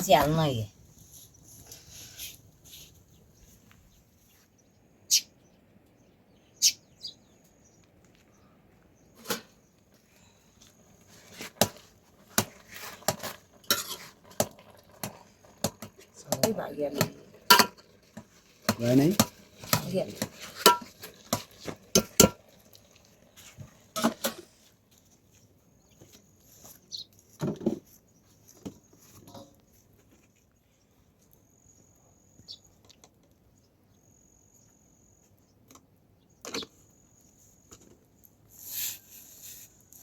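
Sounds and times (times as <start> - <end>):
metal pots and utensils clinking: 12.4 - 23.0, 23.9 - 24.5.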